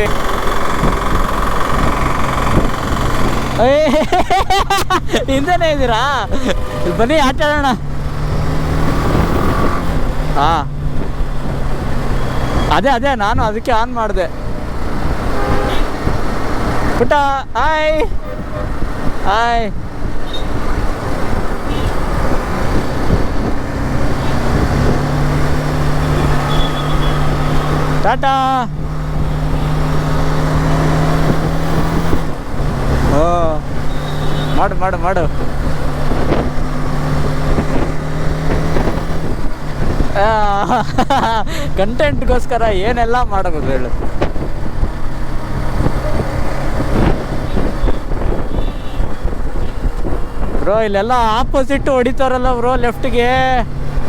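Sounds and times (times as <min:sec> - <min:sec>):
motorcycle engine running: 0:00.0 - 0:12.7, 0:19.8 - 0:41.8
wind rush on microphone: 0:00.0 - 0:13.6, 0:14.4 - 0:54.0
road noise: 0:00.0 - 0:54.0.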